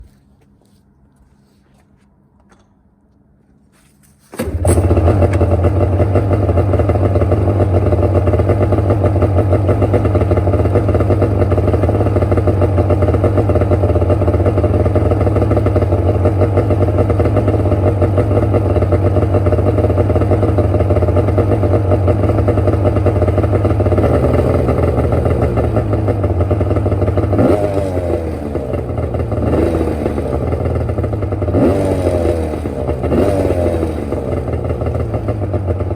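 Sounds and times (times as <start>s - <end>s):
snowmobile engine starting and idling: 4.2s - 35.9s
engine revving: 4.4s - 35.6s.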